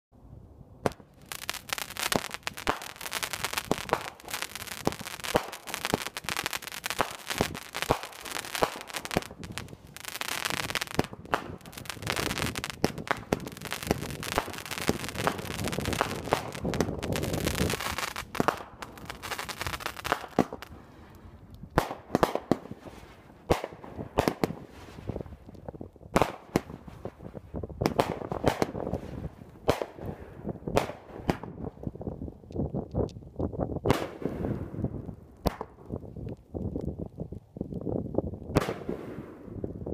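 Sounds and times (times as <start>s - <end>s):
firework sharp bangs: 0.8s - 20.8s
firework cracks and pops: 0.8s - 39.9s.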